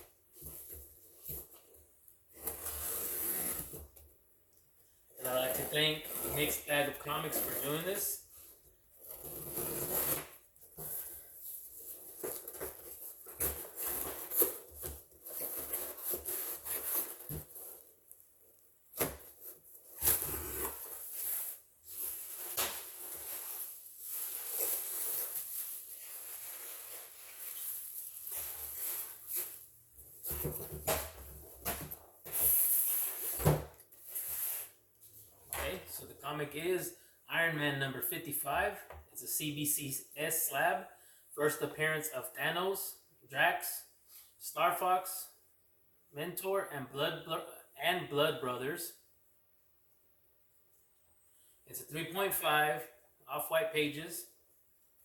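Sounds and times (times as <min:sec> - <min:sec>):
packing rustling and scraping: 0:05.2 - 0:18.2, 0:18.9 - 0:36.0.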